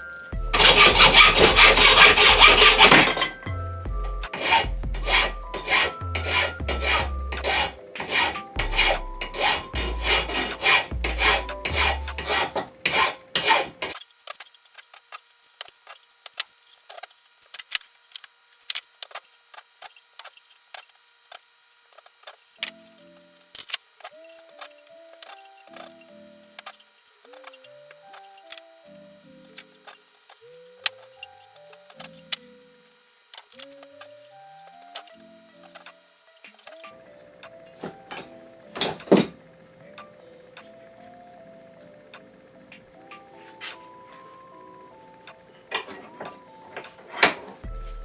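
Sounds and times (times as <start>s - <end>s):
background music: 0.0s - 13.9s, 33.7s - 48.0s
hand tool scraping wood: 0.5s - 3.5s, 4.3s - 14.5s.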